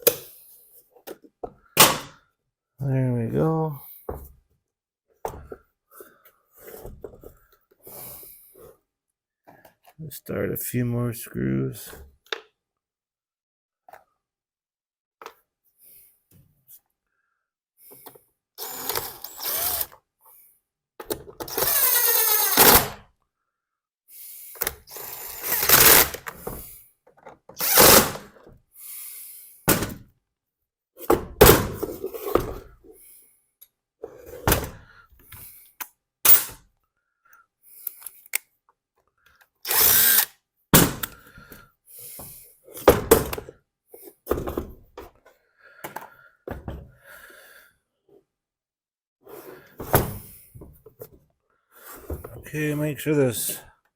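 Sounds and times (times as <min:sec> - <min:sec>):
cordless drill driving screws: 0:18.6 - 0:20.0, 0:21.4 - 0:23.0, 0:24.9 - 0:26.2, 0:27.6 - 0:28.2, 0:39.6 - 0:40.4.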